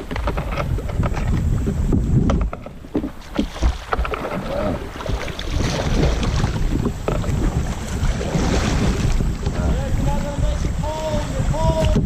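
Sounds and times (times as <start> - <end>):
knocks against boat: 0.0 - 7.7
water rushing and splashing: 0.0 - 12.0
wind rumbling on microphone: 0.0 - 12.0.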